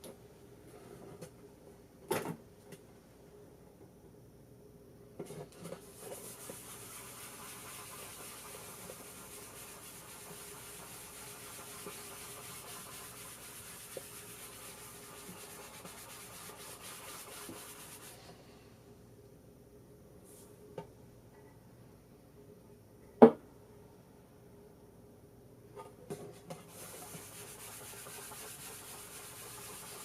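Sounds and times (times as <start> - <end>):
cloth scrubbing wood: 5.9 - 18.2, 26.6 - 30.0.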